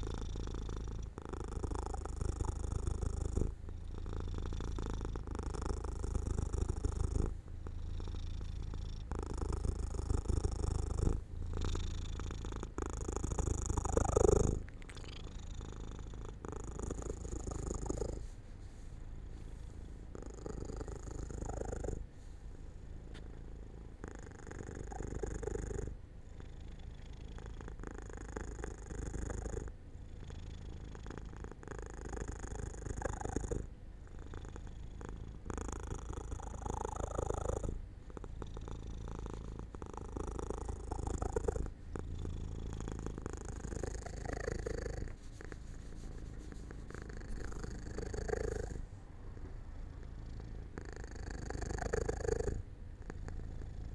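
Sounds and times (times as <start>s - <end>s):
cat purring: 0.0s - 53.9s.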